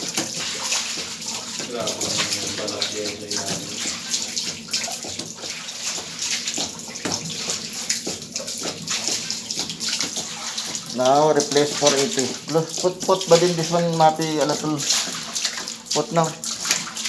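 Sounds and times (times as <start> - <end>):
water running and splashing: 0.0 - 17.0.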